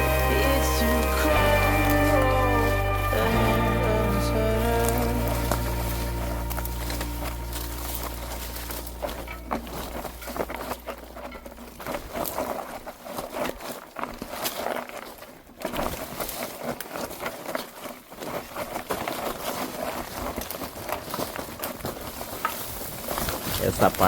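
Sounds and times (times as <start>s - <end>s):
song: 0.0s - 10.3s
rustling through undergrowth: 0.0s - 24.0s.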